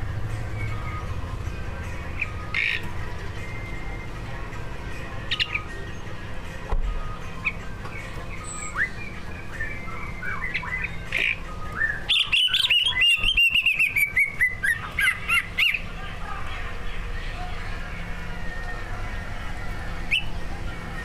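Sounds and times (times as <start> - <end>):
bird singing chirps and whistles: 7.4 - 15.9, 20.0 - 20.4.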